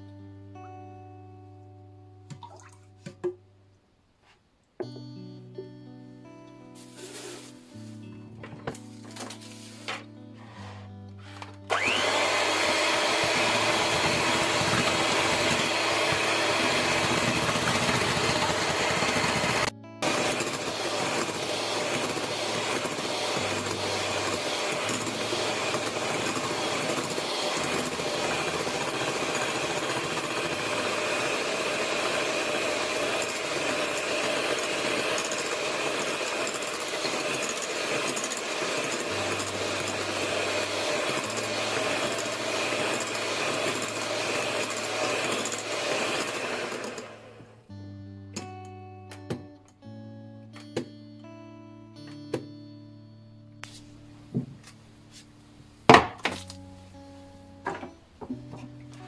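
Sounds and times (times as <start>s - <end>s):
electric hand mixer whining: 11.7s - 47.6s.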